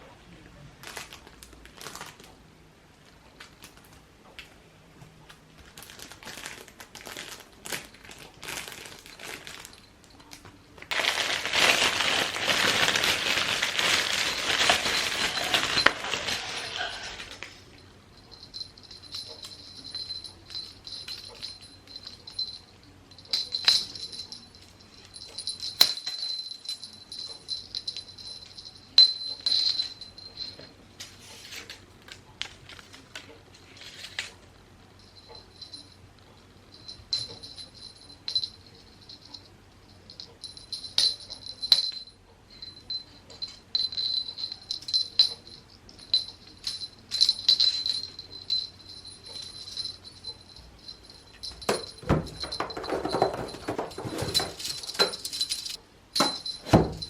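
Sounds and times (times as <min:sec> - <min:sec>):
cat toy rattling: 0:05.9 - 0:31.8, 0:40.1 - 0:57.0
thin high ringing: 0:08.8 - 0:31.8, 0:34.9 - 0:57.0.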